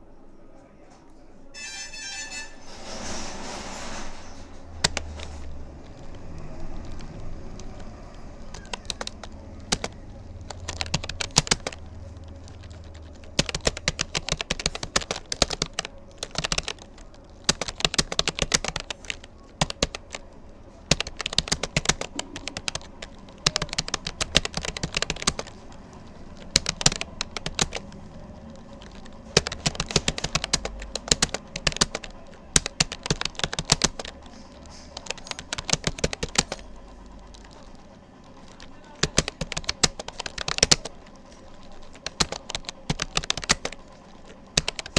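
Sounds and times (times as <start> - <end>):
computer keyboard key clicks: 4.8 - 44.9.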